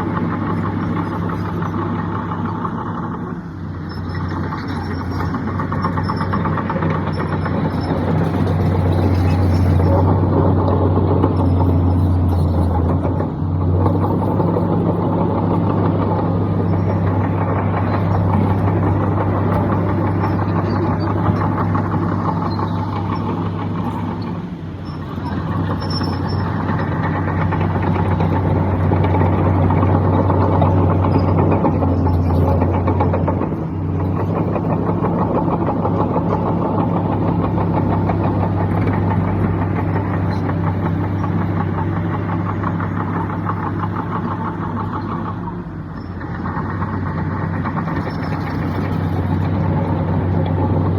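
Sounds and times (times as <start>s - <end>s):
heavy diesel engine running: 0.0s - 50.9s.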